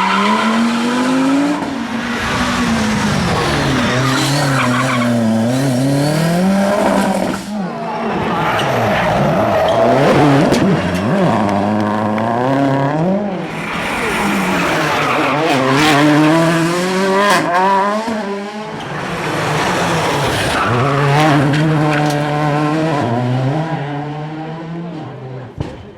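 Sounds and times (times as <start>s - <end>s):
rally car engine revving: 0.0s - 25.8s.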